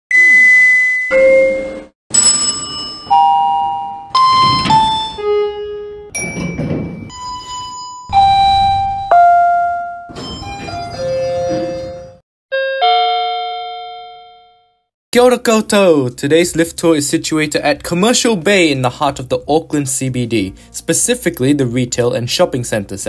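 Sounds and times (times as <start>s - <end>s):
lift arrival chimes: 2.2s - 5.5s, 6.2s - 12.2s.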